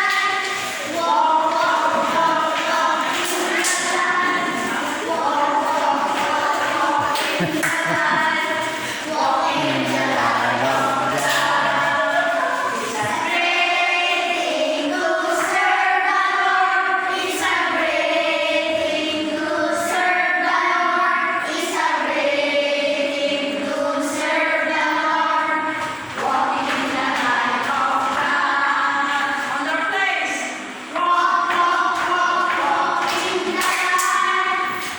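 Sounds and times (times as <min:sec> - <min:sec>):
karaoke singing: 0:00.0 - 0:14.2.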